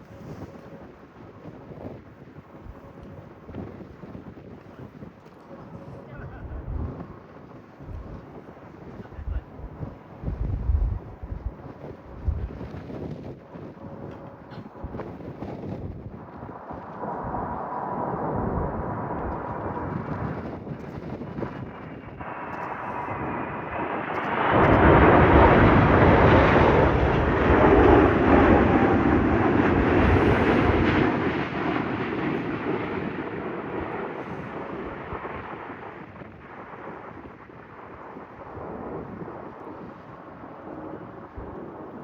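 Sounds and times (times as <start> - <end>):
jet engines passing by: 0.0 - 42.0
wind buffeting microphone: 0.0 - 42.0.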